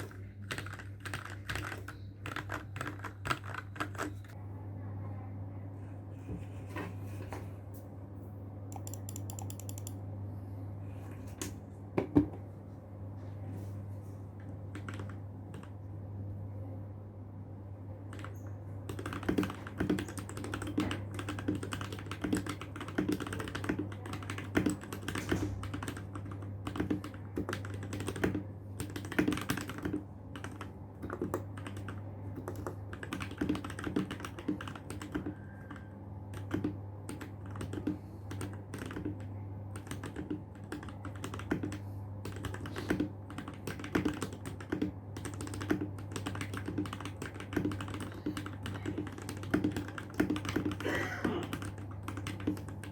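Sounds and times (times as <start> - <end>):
mechanical keyboard typing: 0.0 - 4.4, 8.7 - 10.0, 14.7 - 15.8, 18.1 - 52.9.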